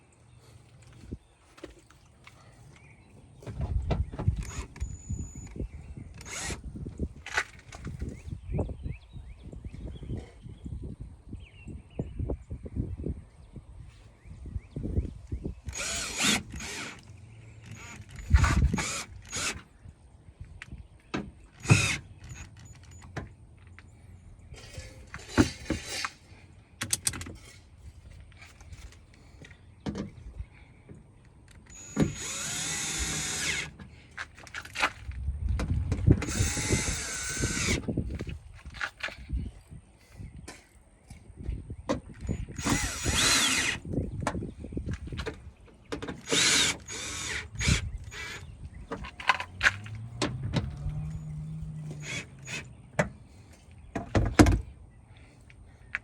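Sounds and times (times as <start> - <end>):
power drill driving screws: 4.4 - 5.6, 6.2 - 6.7, 15.7 - 19.7, 21.6 - 23.1, 31.7 - 33.8, 36.2 - 37.9, 42.2 - 43.9, 46.1 - 48.5, 50.8 - 52.7
handling parts and tools: 24.5 - 30.2, 41.9 - 54.7.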